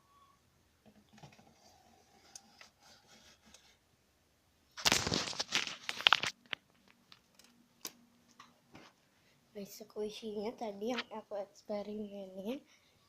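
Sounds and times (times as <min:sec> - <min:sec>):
rough rustling and crunching: 0:04.8 - 0:07.2.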